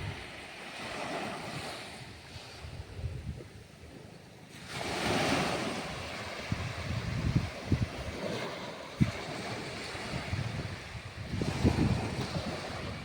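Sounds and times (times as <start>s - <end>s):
wind buffeting microphone: 0.0s - 4.1s, 4.7s - 13.0s
waves washing: 0.0s - 13.0s
low thumps of gusts: 9.0s - 13.0s.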